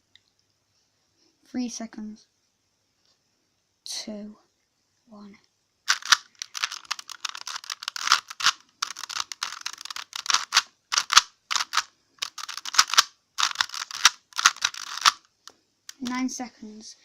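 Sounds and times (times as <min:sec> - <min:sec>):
puzzle cube layers clacking: 0:05.9 - 0:15.3, 0:15.9 - 0:16.2.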